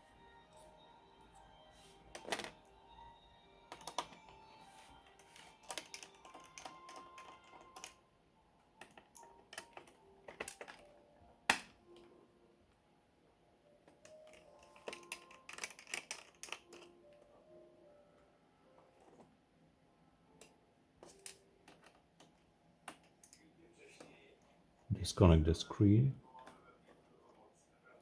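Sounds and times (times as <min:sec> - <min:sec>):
quiet background music: 0:00.0 - 0:28.0
clicks and taps of tools on plastic: 0:05.3 - 0:08.0, 0:20.4 - 0:23.4.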